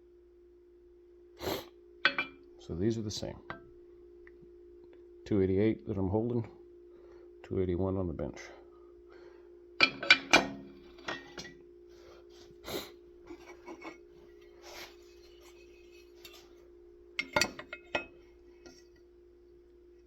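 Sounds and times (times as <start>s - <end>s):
steady low hum: 0.0s - 20.0s
metal parts knocking and clinking: 2.1s - 2.4s, 9.8s - 11.6s, 17.2s - 18.8s
metal parts rubbing: 13.3s - 16.6s.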